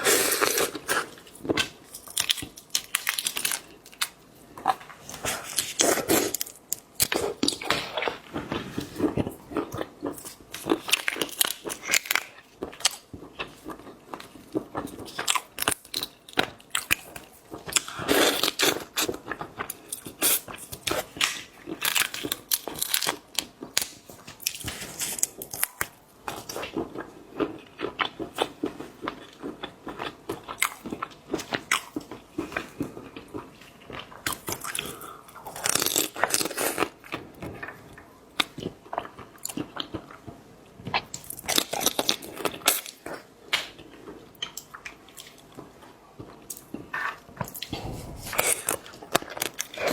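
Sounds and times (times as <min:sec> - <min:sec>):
crisp crunching bites: 0:35.5 - 0:36.9.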